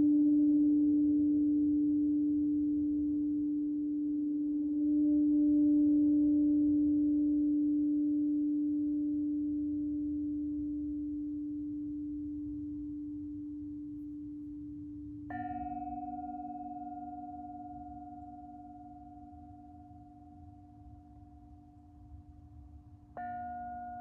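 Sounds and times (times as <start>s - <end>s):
singing bowl ringing: 10.3s - 24.0s.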